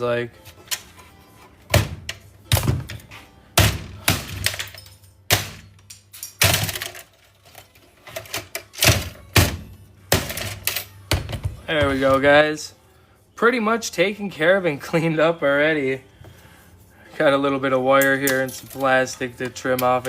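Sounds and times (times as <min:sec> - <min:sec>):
hard parts knocking and cracking: 0:01.7 - 0:12.2.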